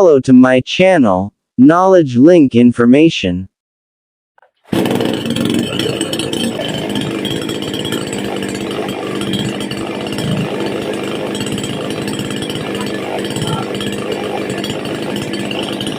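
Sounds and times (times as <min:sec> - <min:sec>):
chainsaw engine running: 0:04.4 - 0:15.9.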